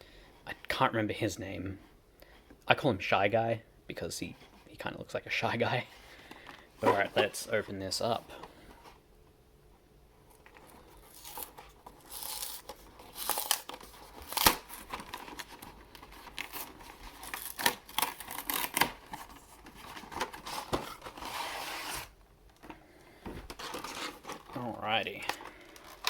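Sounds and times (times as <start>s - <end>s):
plastic wrapping tearing: 10.5s - 22.1s.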